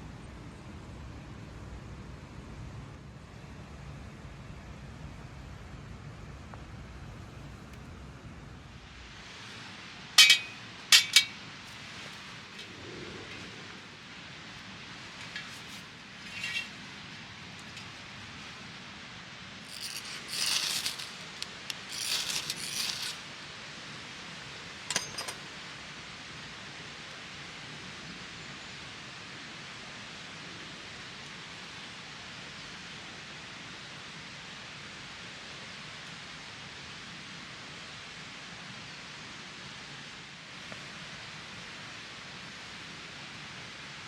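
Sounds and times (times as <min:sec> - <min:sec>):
steady background hiss: 0:00.0 - 0:44.0
rustling clinking handling noise: 0:10.2 - 0:12.2, 0:19.7 - 0:23.3, 0:24.9 - 0:25.5.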